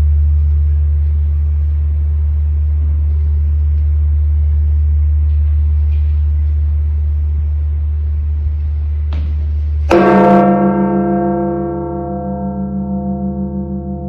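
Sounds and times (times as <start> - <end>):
steady low hum: 0.0 - 14.0
large bell tolling: 9.9 - 14.0.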